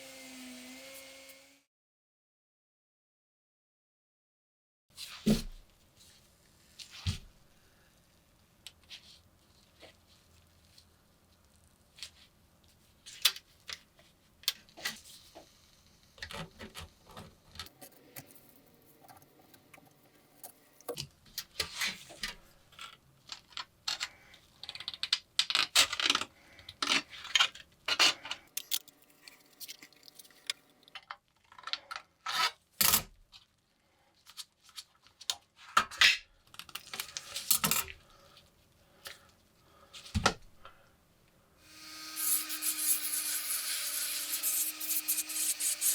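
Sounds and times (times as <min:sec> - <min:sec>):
small metal parts clicking and scraping: 0:17.6 - 0:21.0, 0:22.7 - 0:32.6.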